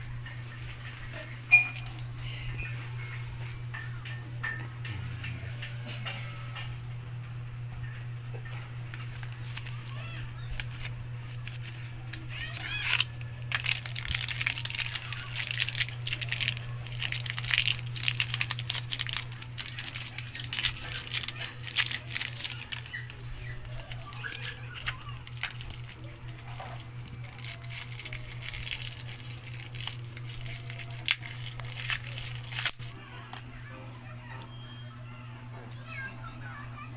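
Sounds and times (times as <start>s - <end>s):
clicking and crackling rattles: 7.8s - 33.4s.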